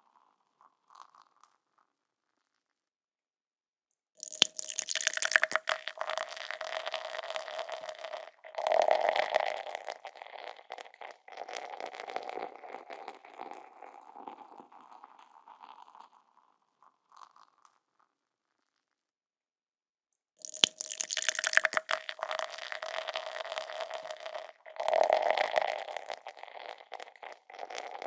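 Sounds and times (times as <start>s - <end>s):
beer pouring into a glass: 4.2s - 16.4s, 20.4s - 28.0s
faint liquid trickles: 4.2s - 17.7s, 20.4s - 28.0s.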